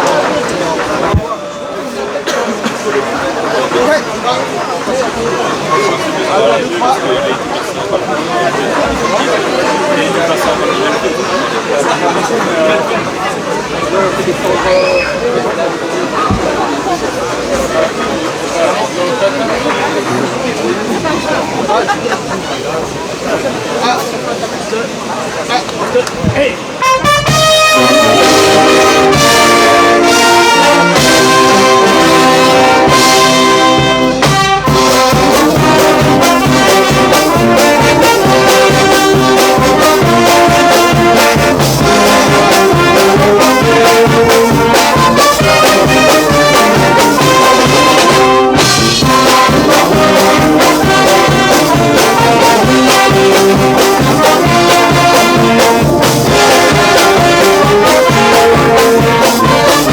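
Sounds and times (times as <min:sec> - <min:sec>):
steady drum beat: 0:26.2 - 0:59.9
trumpets and trombones: 0:26.7 - 0:59.9.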